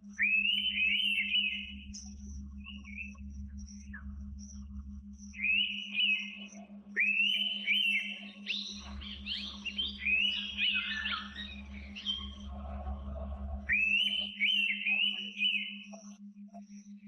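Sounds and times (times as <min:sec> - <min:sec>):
low pulsing hum: 0:00.0 - 0:17.0
forest birds whistling: 0:00.2 - 0:04.6, 0:05.3 - 0:16.1
low rumble: 0:08.7 - 0:14.2.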